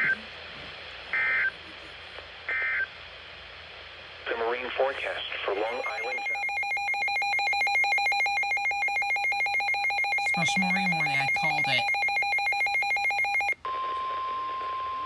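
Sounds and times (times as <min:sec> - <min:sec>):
person speaking: 0:10.3 - 0:11.9.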